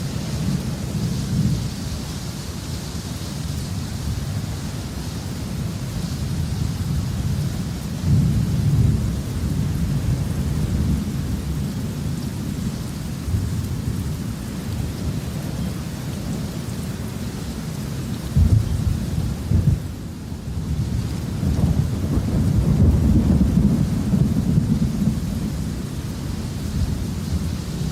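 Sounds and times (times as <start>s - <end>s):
steady rain: 0.0s - 27.9s
thunder rumbling: 18.3s - 27.9s.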